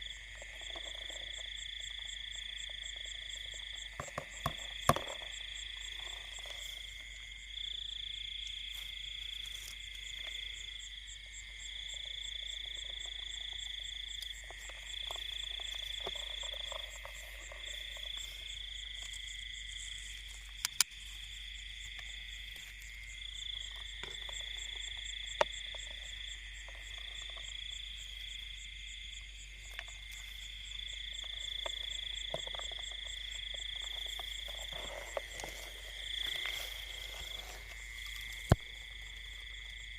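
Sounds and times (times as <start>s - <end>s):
insects trilling: 0.0s - 39.9s
sharp clicks: 20.6s - 20.9s.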